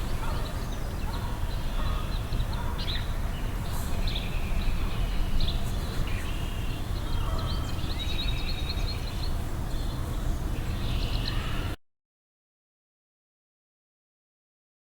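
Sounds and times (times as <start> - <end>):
small birds chirping: 0.0 - 11.8.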